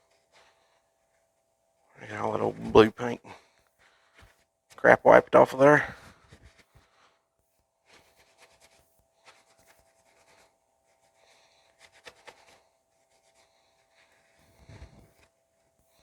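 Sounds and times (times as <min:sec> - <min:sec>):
faint steady hum: 0:00.0 - 0:07.2.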